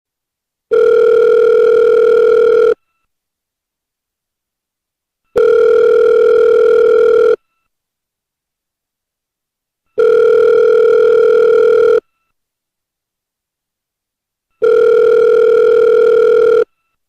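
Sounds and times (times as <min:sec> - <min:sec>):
telephone ringback tone: 0:00.7 - 0:02.8, 0:05.4 - 0:07.4, 0:10.0 - 0:12.1, 0:14.6 - 0:16.7.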